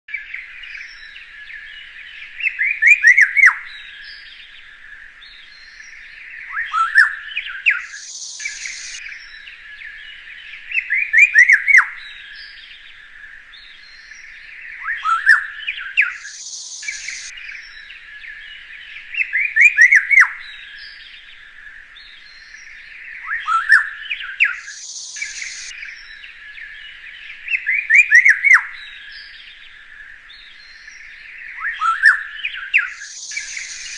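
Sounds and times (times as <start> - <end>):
birds chirping: 0.1 - 33.9
sweeping bird song phrase: 0.1 - 33.9
brief high hiss: 7.8 - 9.0, 16.1 - 17.3, 24.6 - 25.7, 32.9 - 33.9.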